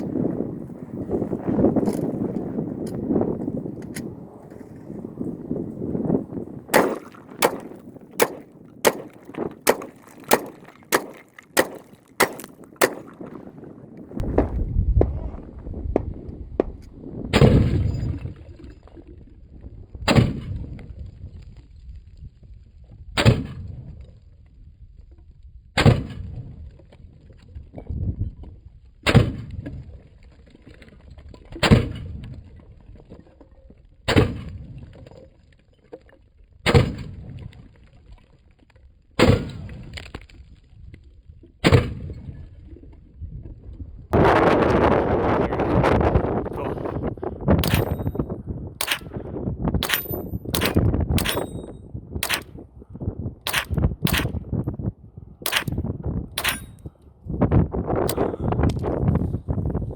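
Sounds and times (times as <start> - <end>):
gunshots with echo: 6.7 - 13.4, 47.6 - 48.2, 48.8 - 49.2, 49.8 - 52.6, 53.5 - 54.4, 55.5 - 55.8, 56.4 - 56.8.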